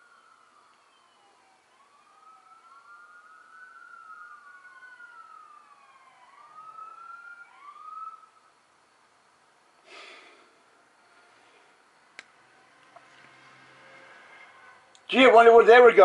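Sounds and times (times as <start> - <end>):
emergency sirens wailing: 0.0 - 9.1, 12.3 - 16.0.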